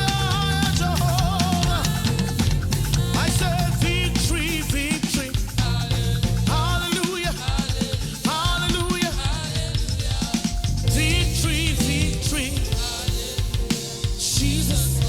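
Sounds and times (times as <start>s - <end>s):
bass guitar: 0.0s - 6.9s, 10.6s - 15.0s
church worship band playing: 0.0s - 15.0s
drum kit beat: 0.0s - 15.0s
held keyboard chords: 10.4s - 15.0s
gliding voice or lead instrument: 10.8s - 15.0s.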